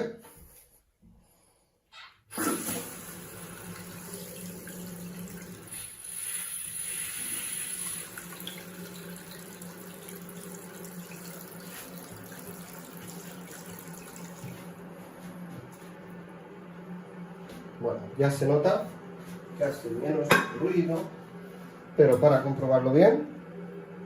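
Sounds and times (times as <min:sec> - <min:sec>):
toilet cistern refilling: 0:02.3 - 0:14.8.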